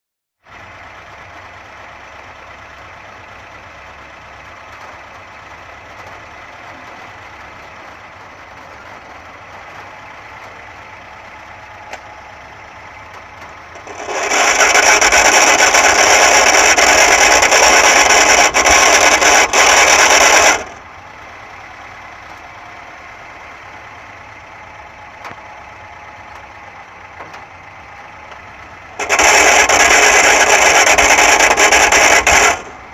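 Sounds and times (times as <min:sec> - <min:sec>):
car engine drone with gearbox hum: 0:00.4 - 0:32.9
loud harsh rasping noise: 0:13.8 - 0:20.8, 0:29.0 - 0:32.9.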